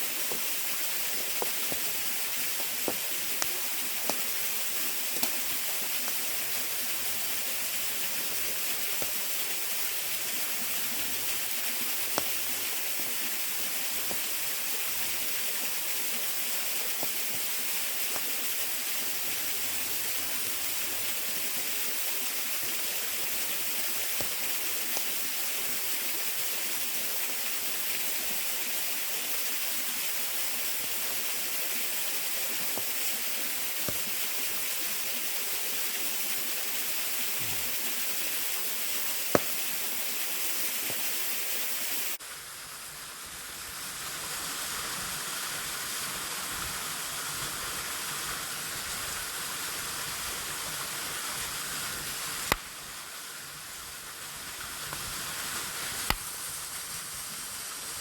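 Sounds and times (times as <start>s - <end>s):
short sharp pops: 5.2s - 6.2s, 39.4s - 39.8s, 52.5s - 52.8s, 56.0s - 56.4s.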